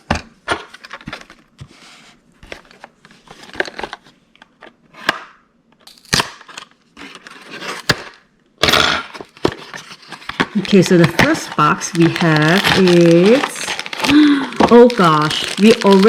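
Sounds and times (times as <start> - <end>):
packaging rustling: 2.5 - 4.2, 9.1 - 16.0
packaging tearing: 5.8 - 16.0.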